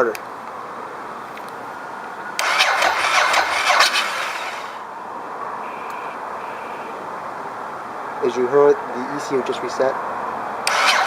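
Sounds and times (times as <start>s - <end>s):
motorcycle starter motor cranking: 2.4s - 4.8s, 10.6s - 11.0s.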